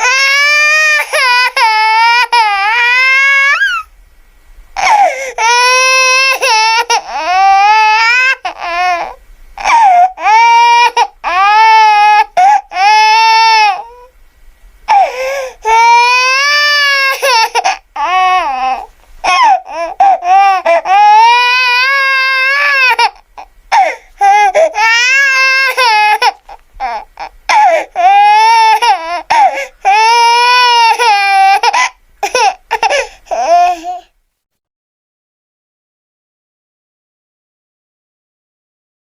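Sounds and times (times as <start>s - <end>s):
catches of breath: 4.8s - 5.4s, 14.9s - 15.7s, 23.7s - 24.7s, 29.3s - 29.8s, 32.9s - 34.0s.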